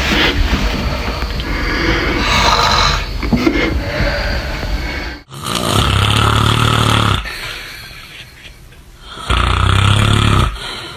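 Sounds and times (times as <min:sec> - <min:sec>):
quiet breath: 0:00.0 - 0:05.3, 0:10.5 - 0:10.9
loud deep snoring: 0:02.2 - 0:04.0, 0:05.2 - 0:07.4, 0:09.1 - 0:10.9.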